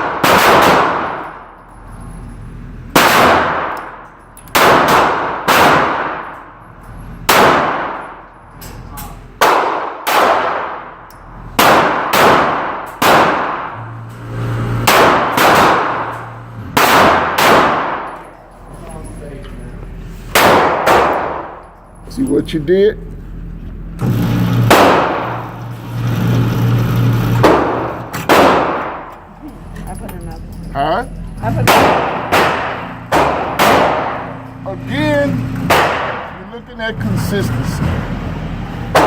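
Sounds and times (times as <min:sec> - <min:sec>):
gunshots with metallic ring: 0:00.0 - 0:01.5, 0:02.9 - 0:06.5, 0:07.2 - 0:08.3, 0:09.4 - 0:13.8, 0:14.8 - 0:18.3, 0:20.3 - 0:21.7, 0:24.7 - 0:25.5, 0:27.4 - 0:29.1, 0:31.4 - 0:34.4, 0:35.7 - 0:36.4.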